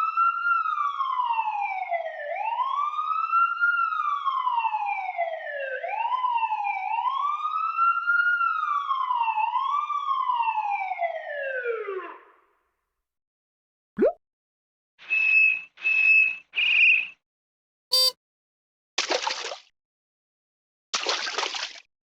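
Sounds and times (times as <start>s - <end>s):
brief rising chirp: 17.9s - 18.1s.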